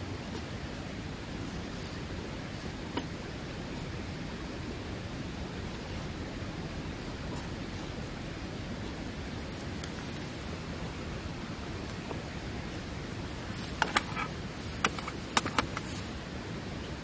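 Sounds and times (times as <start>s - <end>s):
steady background hiss: 0.0s - 17.0s
sharp clicks and taps: 13.7s - 16.0s.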